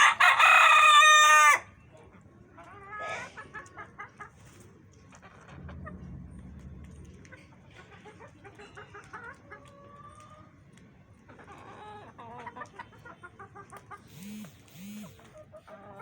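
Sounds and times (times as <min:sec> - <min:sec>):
chickens clucking and calling: 0:00.0 - 0:06.0, 0:08.0 - 0:16.0.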